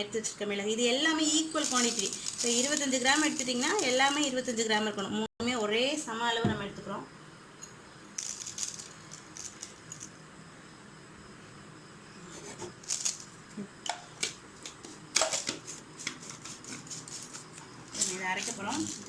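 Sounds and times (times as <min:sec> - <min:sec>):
spices rattling into grinder jar: 0:01.4 - 0:04.3, 0:08.2 - 0:10.2, 0:16.9 - 0:19.0.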